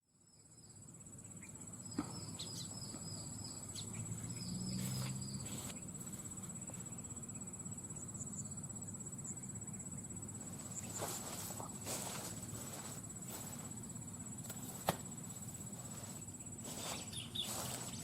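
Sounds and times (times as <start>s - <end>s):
insect trill: 0.1s - 18.0s
rustling footsteps: 4.8s - 6.9s, 10.4s - 18.0s.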